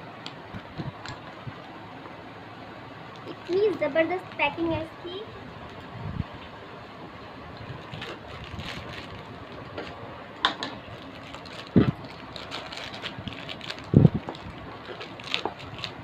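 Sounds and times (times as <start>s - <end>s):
paper packaging crackling: 3.2s - 4.8s, 7.6s - 10.0s, 10.7s - 16.0s.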